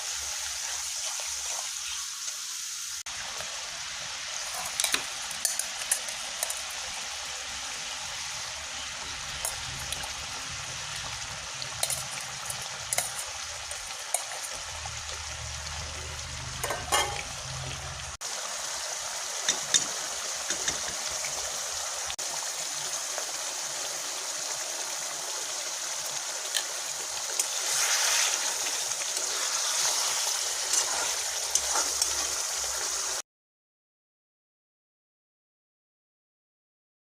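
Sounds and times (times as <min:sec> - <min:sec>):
food sizzling in a pan: 0:00.0 - 0:33.2.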